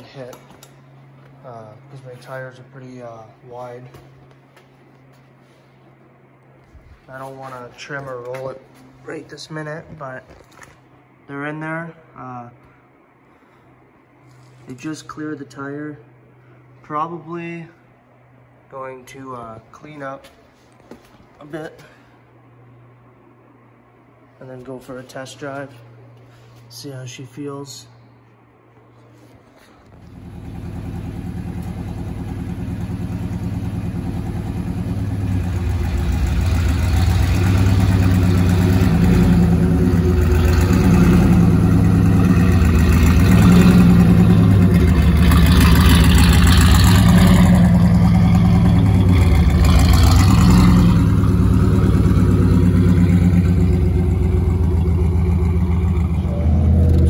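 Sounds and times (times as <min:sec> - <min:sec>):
car engine accelerating through gears: 0:30.1 - 0:57.0.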